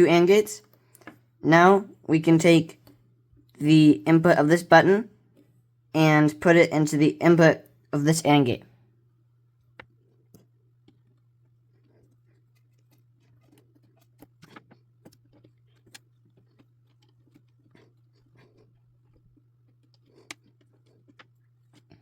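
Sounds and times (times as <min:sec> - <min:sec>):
steady low hum: 0:00.0 - 0:22.0
jumper wire clicks and scratches: 0:10.3 - 0:22.0.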